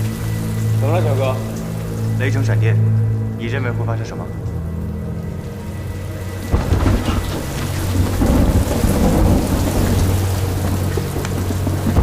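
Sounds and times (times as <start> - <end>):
heavy rain: 0.0 - 12.0
thunder clap and rumble: 6.4 - 12.0.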